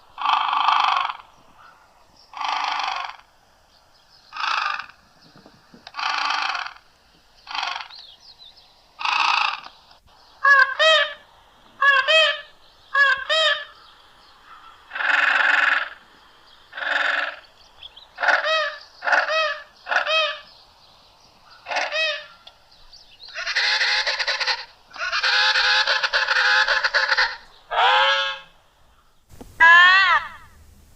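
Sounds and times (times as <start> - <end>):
honking wavering creature calls: 23.3 - 28.5, 29.6 - 30.5.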